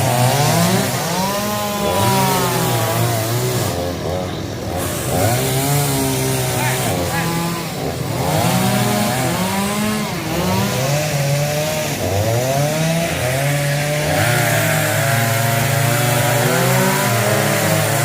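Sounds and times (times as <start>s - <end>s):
chainsaw cutting wood: 0.0s - 18.0s.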